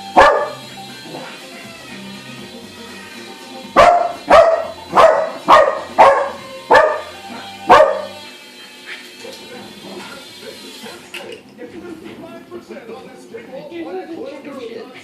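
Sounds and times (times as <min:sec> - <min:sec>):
dog barking: 0:00.2 - 0:01.2, 0:03.8 - 0:08.2.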